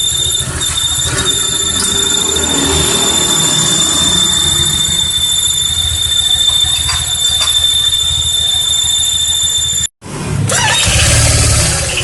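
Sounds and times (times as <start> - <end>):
high-pitched engine whine: 0.0 - 10.2.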